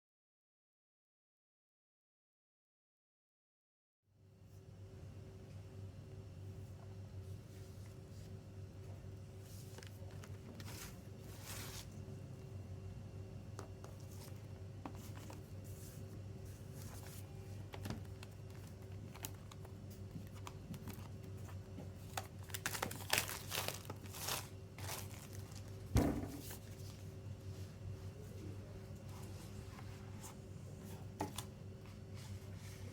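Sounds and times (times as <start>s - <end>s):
faint steady hum: 4.1s - 32.9s
packaging crinkling and rustling: 16.8s - 26.9s.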